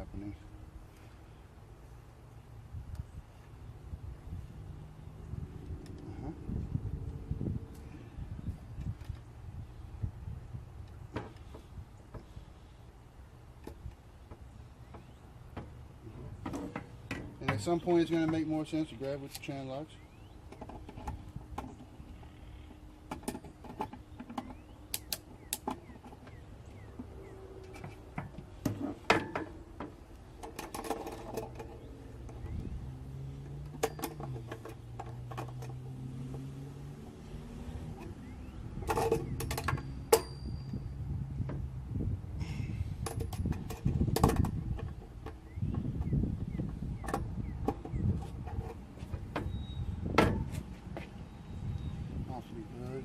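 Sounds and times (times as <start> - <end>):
clicks and scrapes of plumbing parts: 27.0 - 32.6, 33.5 - 35.9, 43.0 - 45.4.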